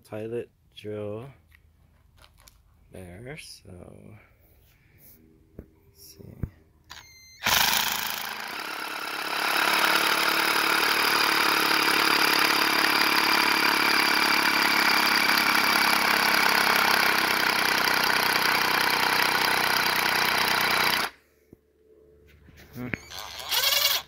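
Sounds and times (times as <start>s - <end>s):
power drill boring into wood: 6.9s - 21.2s, 23.0s - 24.0s.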